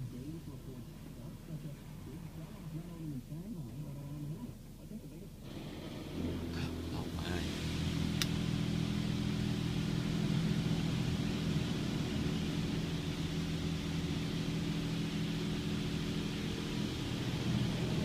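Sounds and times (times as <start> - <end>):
car wash machinery humming: 5.3 - 18.0.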